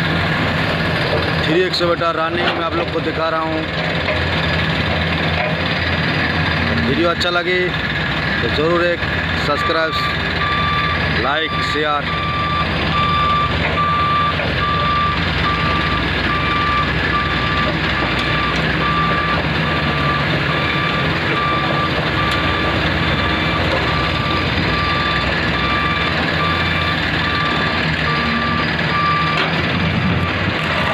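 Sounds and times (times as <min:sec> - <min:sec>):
diesel engines rumbling: 0:00.0 - 0:30.9
reversing alarm beeping: 0:09.6 - 0:30.9.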